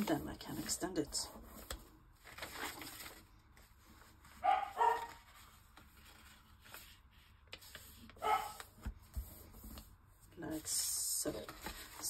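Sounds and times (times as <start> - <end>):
dog barking: 4.4 - 5.2, 8.2 - 8.6.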